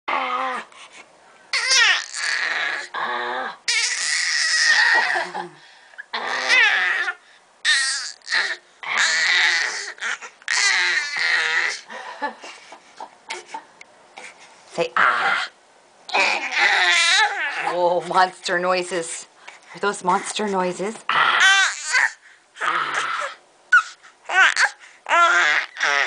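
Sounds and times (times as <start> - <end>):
child making monster growls: 1.6 - 5.3, 6.1 - 11.9, 16.1 - 17.9, 21.1 - 26.0.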